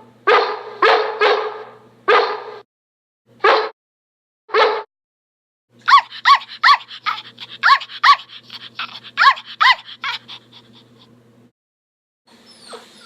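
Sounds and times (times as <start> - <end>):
dog barking: 0.2 - 2.6, 3.4 - 3.8, 4.5 - 4.9, 5.9 - 10.4
dog yipping: 4.5 - 4.9, 5.8 - 10.8, 12.3 - 13.0.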